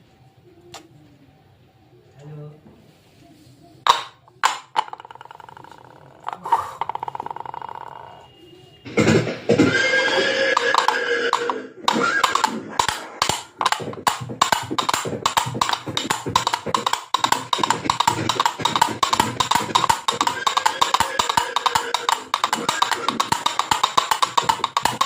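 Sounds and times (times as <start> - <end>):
woody clip-clop galloping knocks: 10.5 - 25.0.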